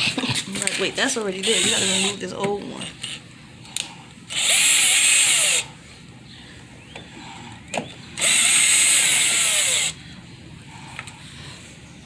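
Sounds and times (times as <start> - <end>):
cordless power drill running: 1.4 - 2.3, 4.2 - 5.8, 8.0 - 10.0.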